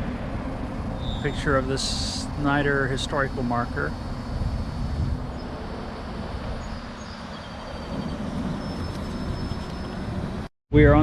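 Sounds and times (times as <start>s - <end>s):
low outdoor rumble: 0.0s - 11.0s
faint high whistles: 1.0s - 1.5s.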